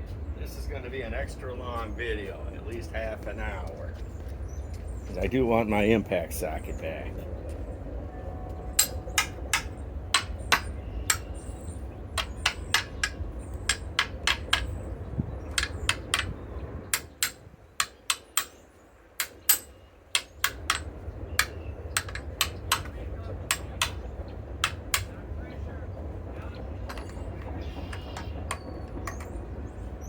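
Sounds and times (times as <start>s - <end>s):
hammer striking metal socket: 8.8s - 11.2s, 19.2s - 24.0s.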